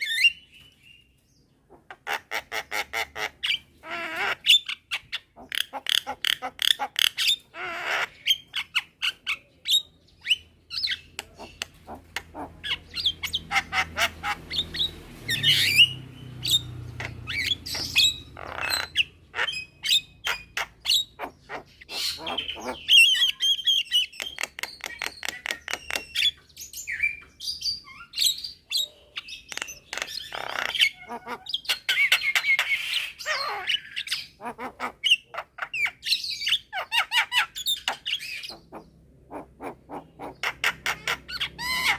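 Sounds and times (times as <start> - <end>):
birds calling with clicks and squawks: 0.0 - 41.9.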